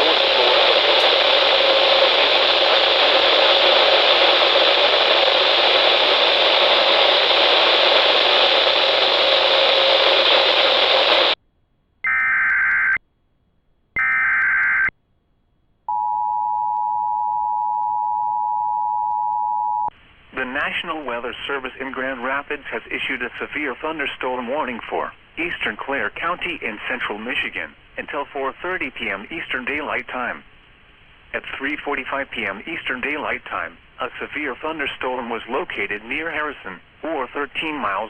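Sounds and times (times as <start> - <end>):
radio static hiss: 0.0 - 11.4, 20.0 - 38.0.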